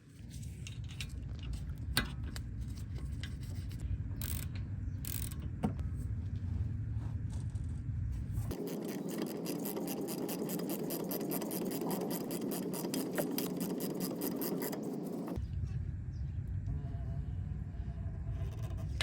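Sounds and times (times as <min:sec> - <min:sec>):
ratchet clicking: 0:04.2 - 0:05.5, 0:08.5 - 0:15.4.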